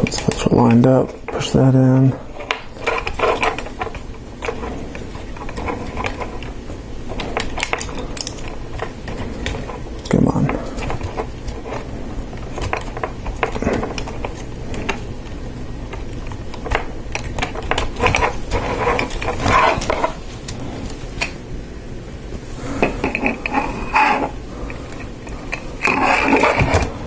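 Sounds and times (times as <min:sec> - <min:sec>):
plastic parts clicking and rattling: 0:02.4 - 0:11.8.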